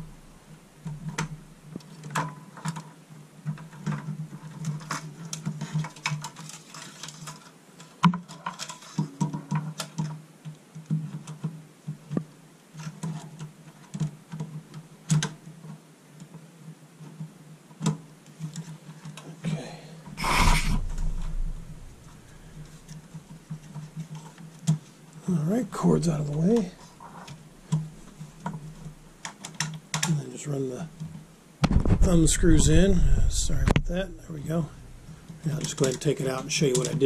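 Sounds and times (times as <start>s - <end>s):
low steady hum: 0.0s - 1.7s, 19.5s - 23.8s, 25.2s - 29.3s, 30.2s - 37.0s
clicks and rattles of plastic parts: 0.8s - 16.4s, 17.0s - 19.4s, 22.5s - 25.2s, 26.2s - 30.2s, 35.2s - 37.0s.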